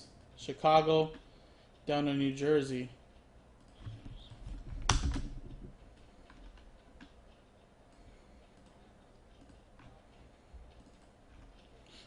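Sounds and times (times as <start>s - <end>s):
computer typing: 3.6s - 11.8s.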